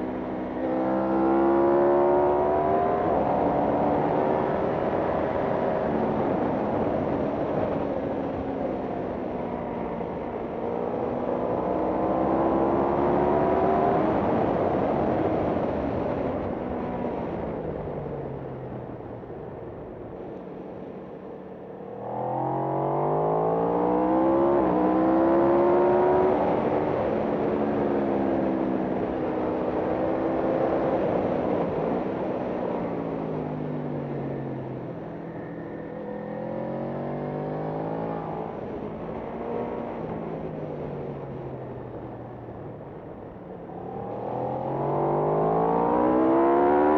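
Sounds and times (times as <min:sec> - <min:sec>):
racing motorcycle engine revving: 0:21.9 - 0:28.4, 0:43.7 - 0:46.9.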